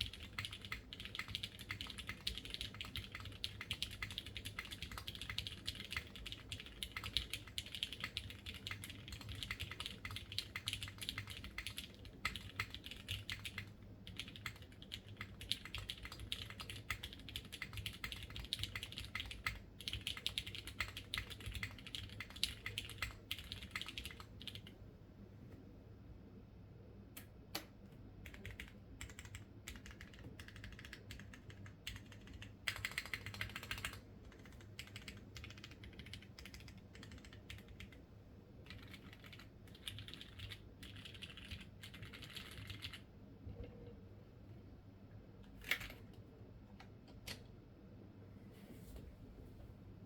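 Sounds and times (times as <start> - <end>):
mechanical keyboard typing: 0.0 - 24.7, 28.2 - 38.0, 38.6 - 43.1.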